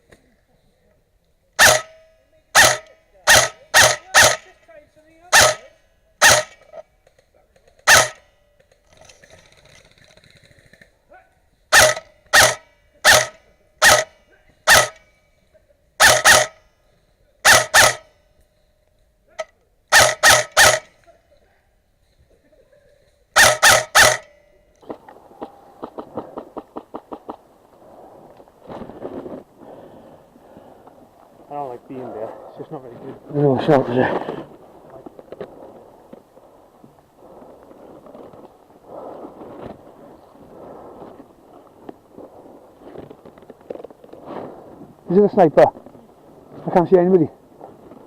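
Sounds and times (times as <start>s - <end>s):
rattling ticks: 5.3s - 11.0s, 11.7s - 15.0s, 17.5s - 18.1s, 19.9s - 21.0s, 23.4s - 24.4s.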